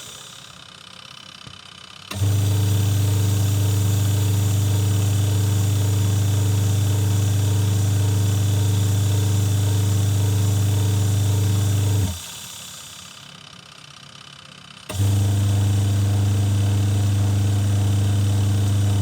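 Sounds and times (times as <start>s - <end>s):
washing machine motor humming: 2.1s - 12.4s, 14.9s - 19.0s.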